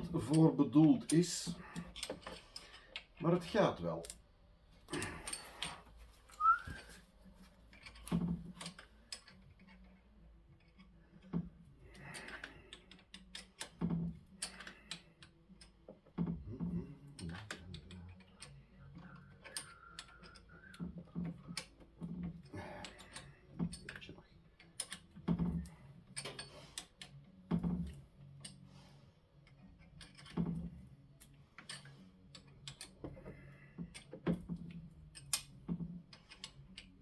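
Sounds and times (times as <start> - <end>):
hand tools clicking and knocking: 0.0 - 4.2, 4.8 - 7.0, 10.5 - 28.7, 29.4 - 37.0
whistle-like tone: 6.4 - 7.0.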